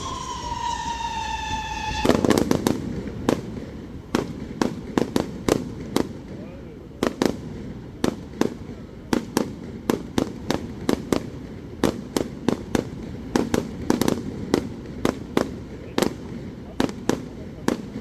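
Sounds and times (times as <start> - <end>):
fireworks bursting with sharp bangs: 0.0 - 18.0.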